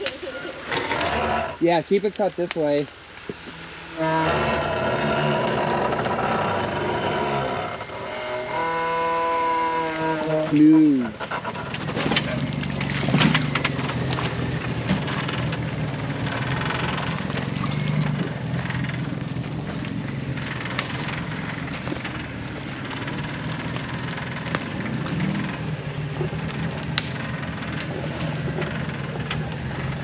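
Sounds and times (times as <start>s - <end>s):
off-road vehicle engine running: 0.0s - 30.0s
tyres crunching over rock: 10.2s - 30.0s.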